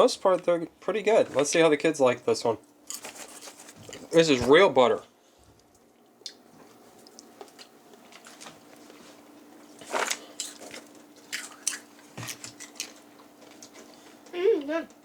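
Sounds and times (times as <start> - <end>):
popcorn crunching: 2.9 - 4.3, 5.6 - 9.0, 9.6 - 14.3.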